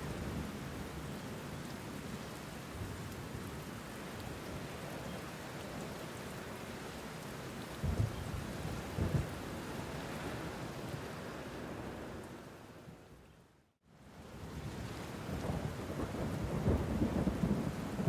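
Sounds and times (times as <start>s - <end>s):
steady rain falling: 0.0s - 13.1s, 13.7s - 18.0s
low rumble of thunder: 7.8s - 9.5s, 15.2s - 18.0s.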